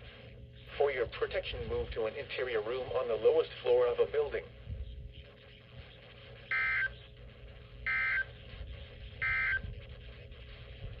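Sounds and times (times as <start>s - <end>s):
buzzy digital data bursts: 5.2s - 11.0s.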